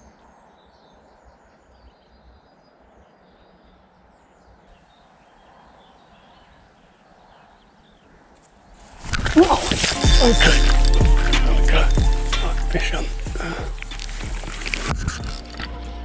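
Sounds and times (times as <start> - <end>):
small birds chirping: 0.0 - 16.0
steady low rumble: 9.3 - 16.0.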